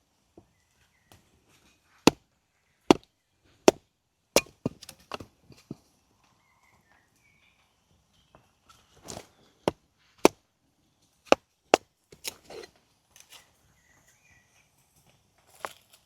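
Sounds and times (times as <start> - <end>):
firewood being chopped: 2.9 - 3.8, 4.4 - 5.3, 11.3 - 12.7.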